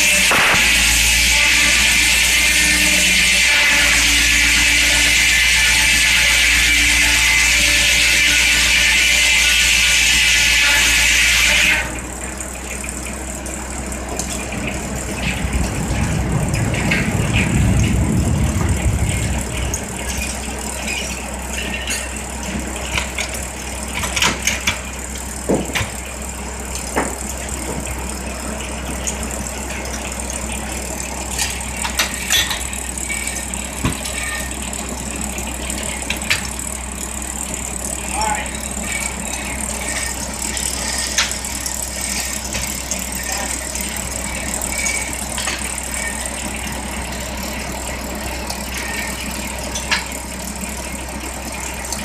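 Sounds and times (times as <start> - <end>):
saw cutting: 0.0 - 18.1, 31.2 - 47.4
mill machinery hum: 0.0 - 52.0
clanks and rattles: 11.8 - 52.0
low rumble: 14.3 - 22.6.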